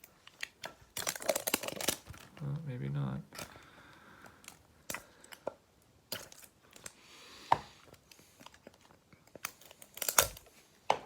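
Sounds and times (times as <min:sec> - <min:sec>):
packaging clicks and taps: 0:00.0 - 0:02.4
packaging rustling: 0:00.0 - 0:02.6, 0:07.9 - 0:10.8.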